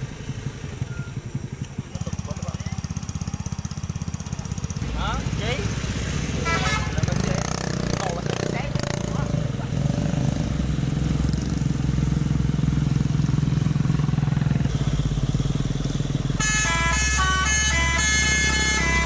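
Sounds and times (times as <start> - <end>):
diesel truck engine running: 0.0 - 19.0
multi-tone horn melody: 6.4 - 7.6, 16.3 - 19.0.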